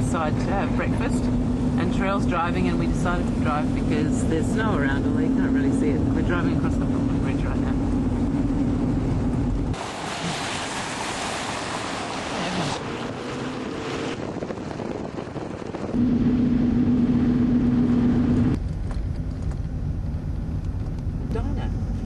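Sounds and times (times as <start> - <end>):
low engine drone: 0.0 - 22.0
road and wind noise: 0.0 - 22.0
loud rushing hiss: 9.8 - 12.8.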